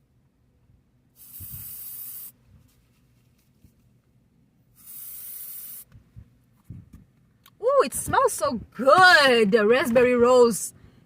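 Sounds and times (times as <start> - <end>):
aerosol spray hissing: 1.2 - 2.4, 4.8 - 5.9.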